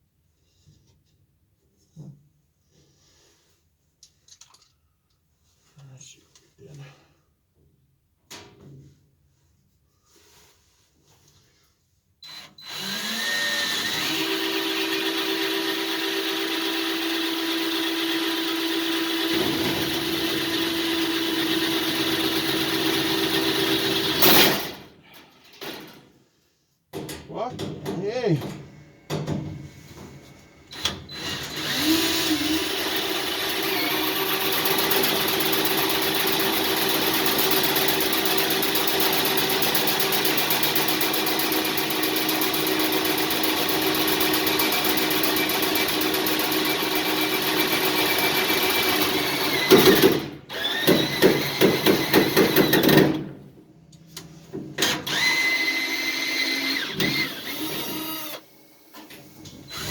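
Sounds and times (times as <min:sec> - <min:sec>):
power drill running: 0:12.2 - 0:24.9, 0:30.7 - 0:53.2, 0:54.8 - 0:59.0, 0:59.7 - 0:59.9.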